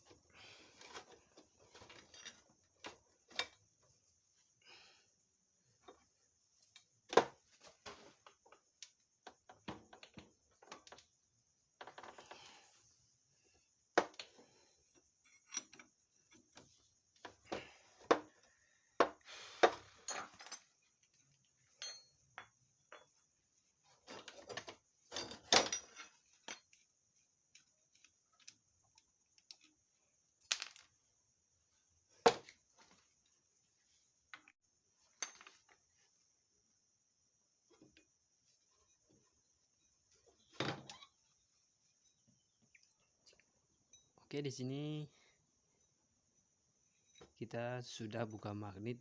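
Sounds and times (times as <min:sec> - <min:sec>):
metal tools clinking: 0:15.2 - 0:16.6, 0:20.0 - 0:23.2, 0:24.1 - 0:26.8.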